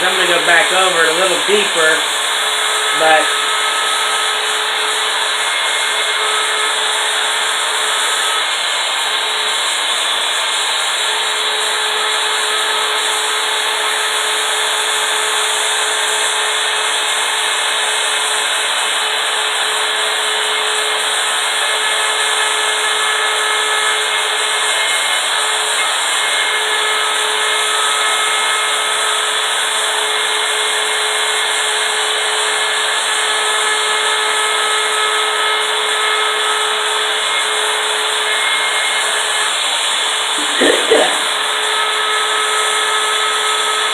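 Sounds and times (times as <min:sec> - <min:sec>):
router bit cutting wood: 0:00.0 - 0:43.9
router motor whine: 0:00.0 - 0:43.9.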